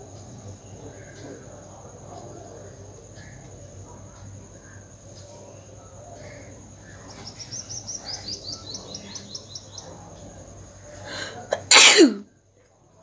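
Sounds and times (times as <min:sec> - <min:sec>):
bird chirping: 0:00.2 - 0:11.1
woman sneezing: 0:11.5 - 0:12.2.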